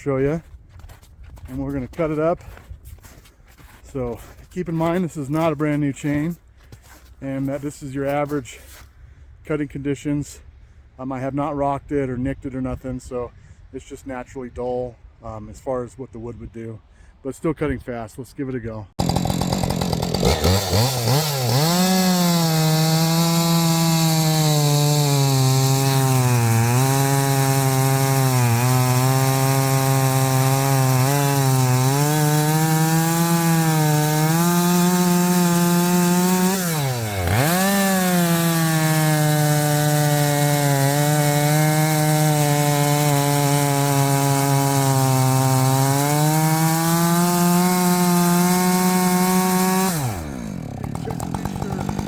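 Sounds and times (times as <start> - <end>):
chainsaw cutting a log: 19.0 - 52.0.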